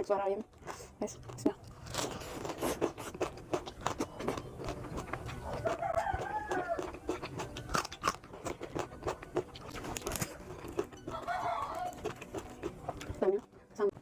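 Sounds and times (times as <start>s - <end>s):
crunchy chewing: 0.4s - 14.0s
rooster crowing: 5.6s - 7.0s, 11.1s - 12.1s.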